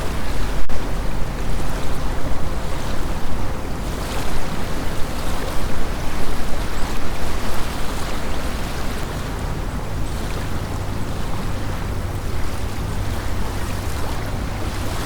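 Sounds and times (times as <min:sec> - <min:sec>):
lake waves lapping at shore: 0:00.0 - 0:15.0.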